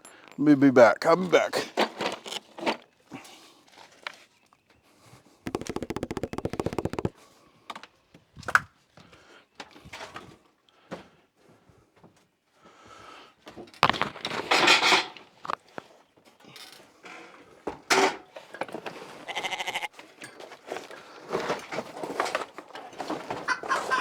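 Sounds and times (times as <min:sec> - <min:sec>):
fast run of even clicks: 0:05.5 - 0:07.1.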